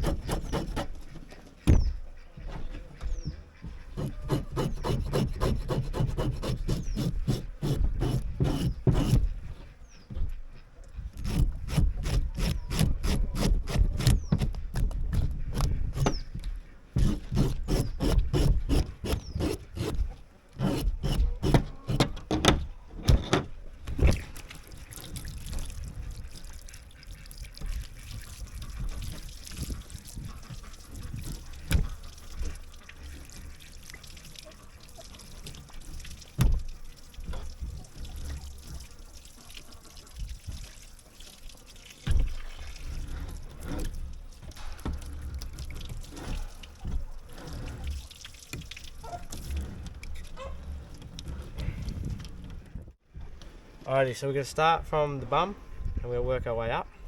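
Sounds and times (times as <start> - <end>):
isolated knocks: 0.0 - 5.3, 6.6 - 10.5
water running: 24.2 - 50.9.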